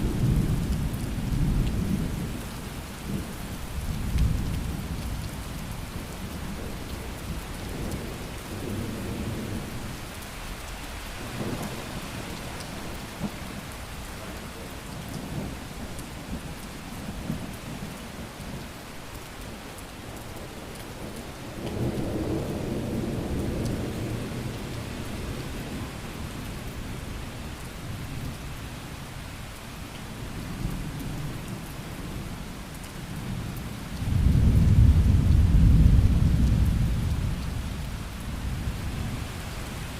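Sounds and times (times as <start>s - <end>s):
steady rain falling: 0.0s - 39.9s
low thunder rumbling: 33.2s - 39.2s.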